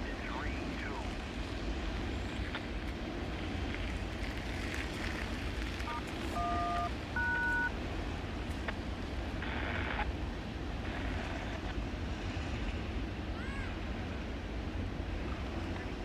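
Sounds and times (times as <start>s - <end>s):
two-tone touch-tone beeps: 5.9s - 7.7s.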